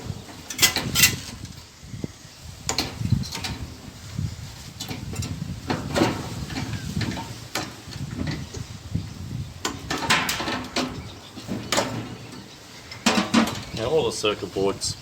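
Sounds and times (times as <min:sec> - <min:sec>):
metal and plastic parts rattling: 0:00.2 - 0:01.6, 0:04.8 - 0:08.7, 0:09.6 - 0:14.4.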